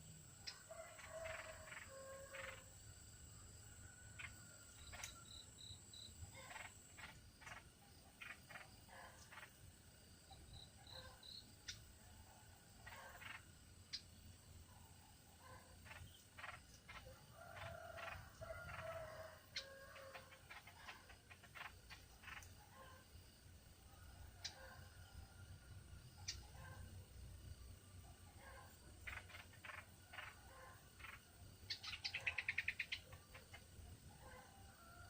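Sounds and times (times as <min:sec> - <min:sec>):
small bird chattering calls: 0:06.3 - 0:09.6, 0:12.8 - 0:14.2, 0:15.4 - 0:22.8, 0:28.4 - 0:33.7.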